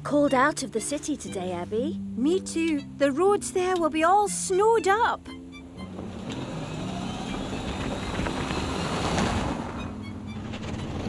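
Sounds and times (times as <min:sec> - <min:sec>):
vehicle engine hum: 0:05.2 - 0:11.0.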